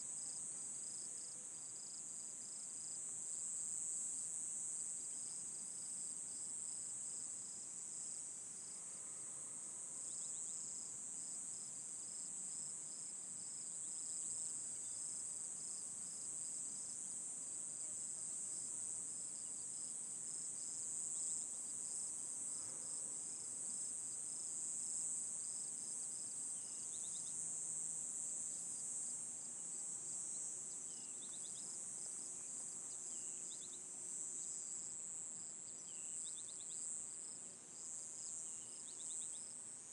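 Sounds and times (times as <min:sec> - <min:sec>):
crickets chorus: 0:10.0 - 0:17.0, 0:17.8 - 0:39.7.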